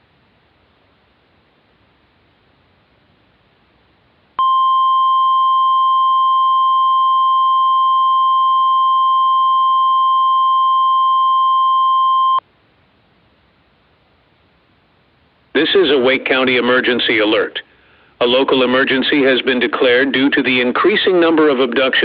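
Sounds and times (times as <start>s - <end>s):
faint background hiss: 0.0s - 6.4s, 12.4s - 22.0s.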